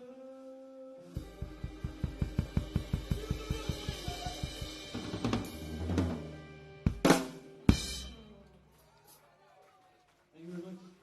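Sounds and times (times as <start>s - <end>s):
bass drum and snare beat: 1.2s - 8.2s.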